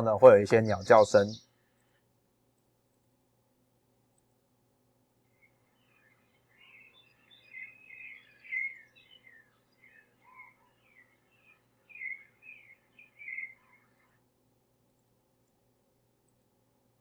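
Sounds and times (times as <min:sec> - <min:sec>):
birds chirping: 0:00.0 - 0:02.0, 0:05.3 - 0:14.3
faint steady hum: 0:00.0 - 0:17.0.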